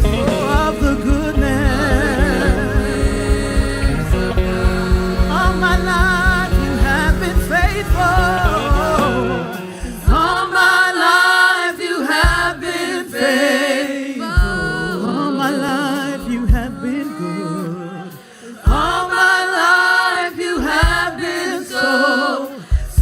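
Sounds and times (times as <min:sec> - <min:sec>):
band playing: 0:00.0 - 0:11.2
steady drumbeat: 0:00.0 - 0:21.9, 0:22.5 - 0:23.0
voices singing: 0:00.0 - 0:23.0.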